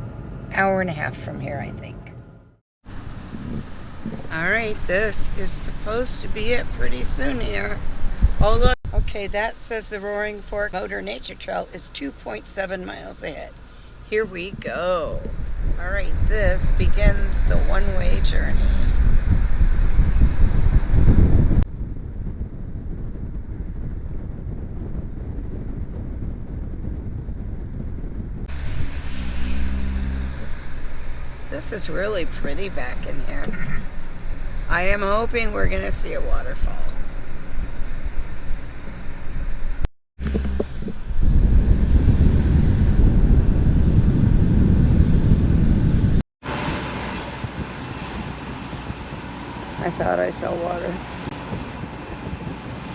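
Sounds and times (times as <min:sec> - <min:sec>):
smooth driving noise: 0:00.0 - 0:26.4, 0:28.2 - 0:52.9
road and engine rumble: 0:00.0 - 0:52.9
steady engine hum: 0:02.8 - 0:52.9.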